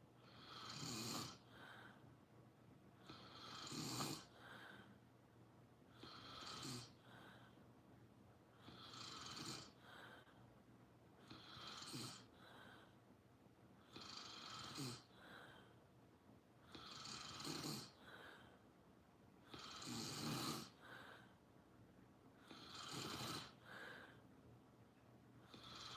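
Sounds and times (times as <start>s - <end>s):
person snoring: 0.2s - 2.0s, 3.0s - 4.9s, 6.0s - 7.4s, 8.6s - 10.2s, 11.2s - 12.9s, 13.8s - 15.6s, 16.7s - 18.5s, 19.5s - 21.2s, 22.4s - 24.2s, 25.5s - 25.9s.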